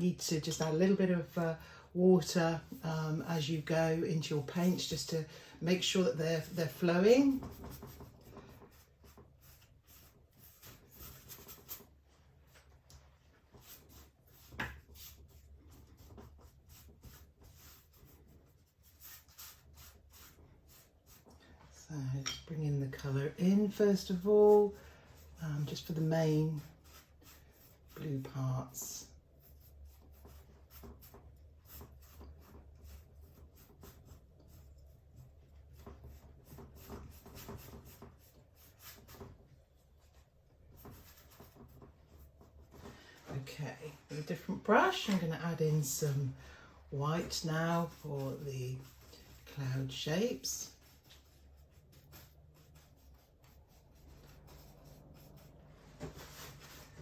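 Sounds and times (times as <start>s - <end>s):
paintbrush brushing on canvas: 5.7s - 21.7s, 22.9s - 57.0s.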